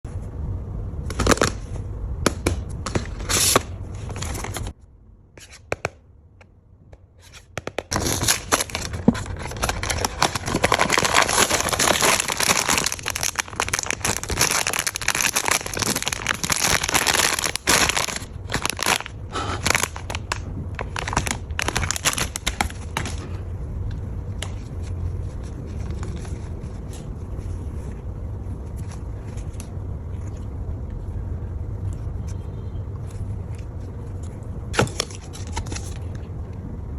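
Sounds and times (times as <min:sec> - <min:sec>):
packaging tearing and crinkling: 0:07.6 - 0:23.3, 0:34.8 - 0:36.1.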